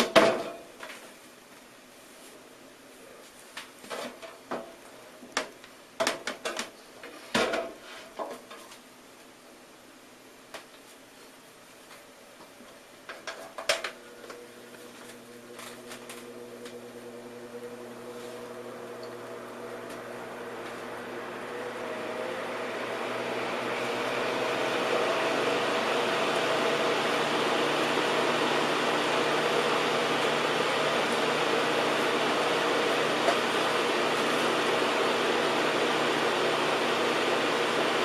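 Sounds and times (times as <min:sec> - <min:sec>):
box fan motor humming: 0:14.3 - 0:38.0.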